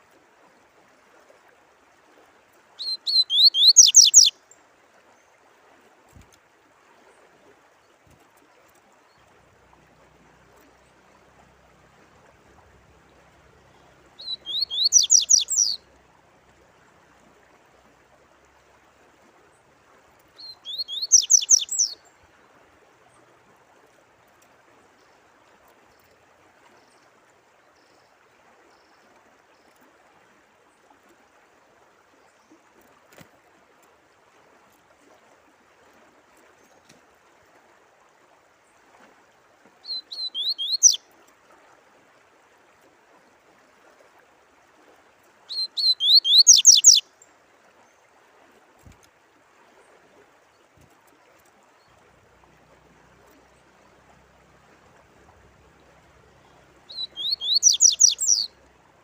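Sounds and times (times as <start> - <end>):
trickle of running water: 0.0 - 59.0
songbird singing: 2.8 - 4.4, 10.5 - 16.0, 20.2 - 22.4, 39.8 - 41.1, 45.5 - 47.3, 55.0 - 58.8.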